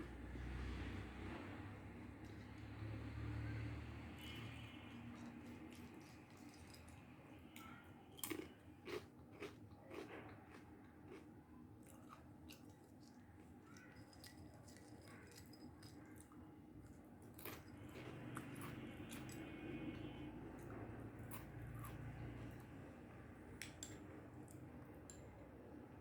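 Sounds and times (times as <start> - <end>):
person chewing crunchy food: 8.2 - 22.7.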